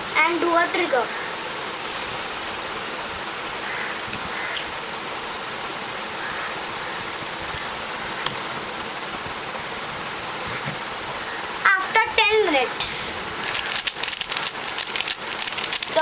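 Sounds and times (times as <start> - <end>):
background hiss: 0.0 - 16.0.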